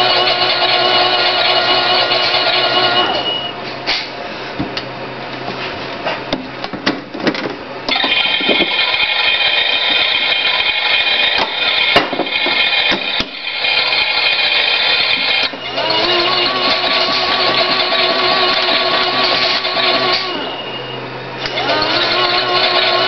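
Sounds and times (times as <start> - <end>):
toy washing machine running: 0.0 - 3.3, 7.9 - 20.5, 21.4 - 23.0.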